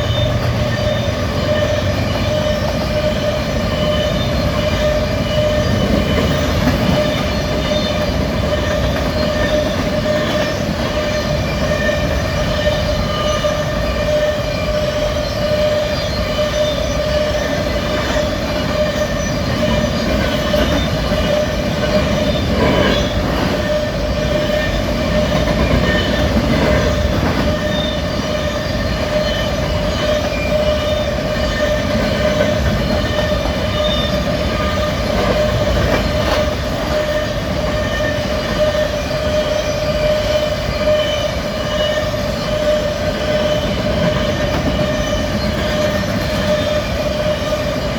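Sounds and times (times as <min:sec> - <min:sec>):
high ringing tone: 0:00.0 - 0:47.9
train wheels rumbling on rail: 0:00.0 - 0:47.9.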